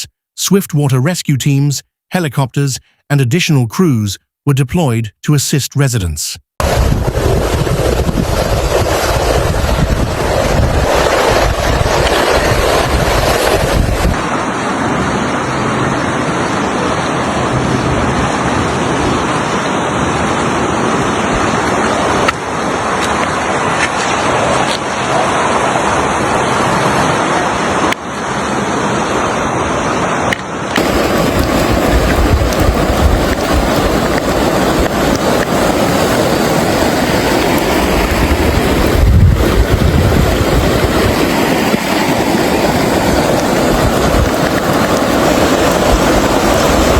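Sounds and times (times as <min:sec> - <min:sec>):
wind buffeting microphone: 0:06.6 - 0:26.9, 0:30.8 - 0:46.9
rushing floodwater: 0:06.6 - 0:46.9.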